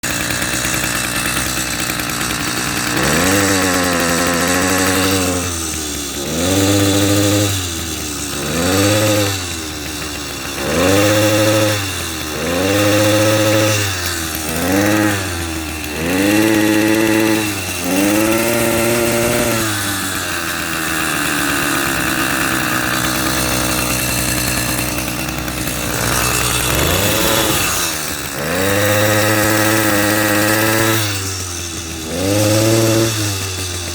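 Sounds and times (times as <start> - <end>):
two-stroke engine revving: 0.0 - 33.9.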